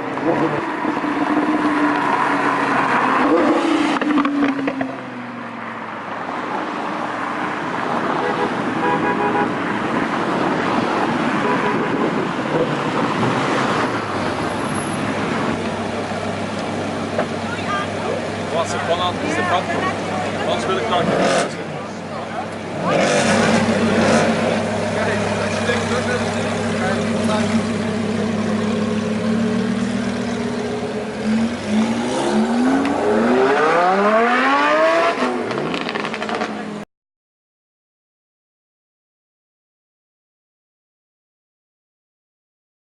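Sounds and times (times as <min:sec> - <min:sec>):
road traffic: 0:00.0 - 0:36.9
sports car engine accelerating: 0:15.2 - 0:36.8
exhaust crackles: 0:15.4 - 0:33.0.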